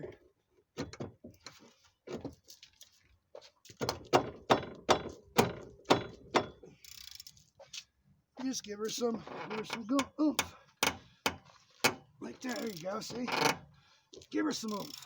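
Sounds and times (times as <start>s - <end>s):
ratchet metallic clicks: 6.7s - 7.4s, 11.8s - 13.6s, 14.6s - 15.0s.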